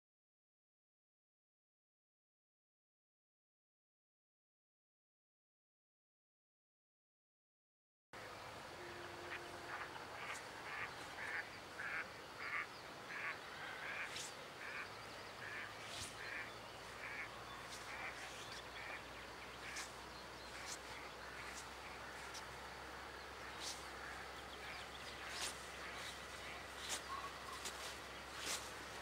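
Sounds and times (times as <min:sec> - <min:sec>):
steady hiss: 0:08.2 - 0:29.0
birds repeated short calls: 0:08.8 - 0:29.0
high bird chirps: 0:23.2 - 0:29.0.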